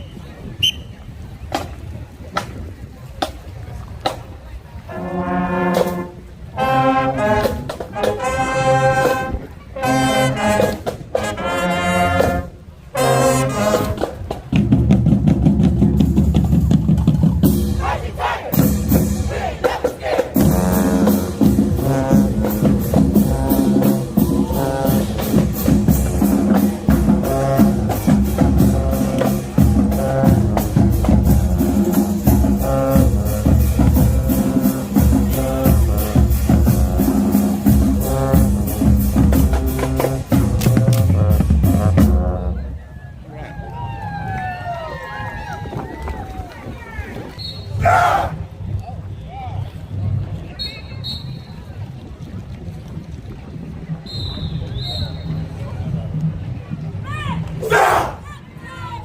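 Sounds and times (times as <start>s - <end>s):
marching band with drums: 0.0s - 52.0s, 52.8s - 59.0s
brass section blasting chords: 4.8s - 14.0s, 17.6s - 42.8s.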